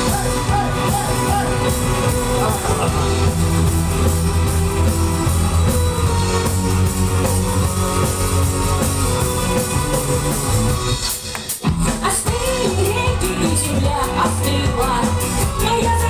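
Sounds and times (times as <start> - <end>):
sustained bass line: 0.0 - 11.1
drums: 0.0 - 16.0
electric guitar: 0.0 - 16.0.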